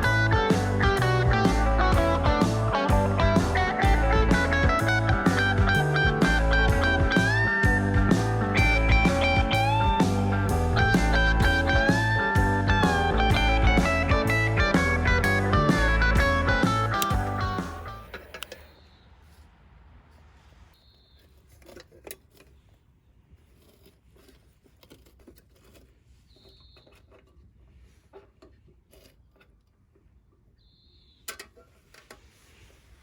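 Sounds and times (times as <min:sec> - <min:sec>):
low rumble: 0:00.0 - 0:18.1
guitar background music: 0:00.0 - 0:18.4.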